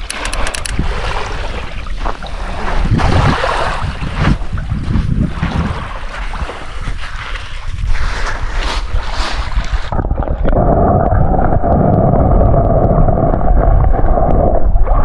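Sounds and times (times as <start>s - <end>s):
wind buffeting microphone: 2.8s - 9.0s.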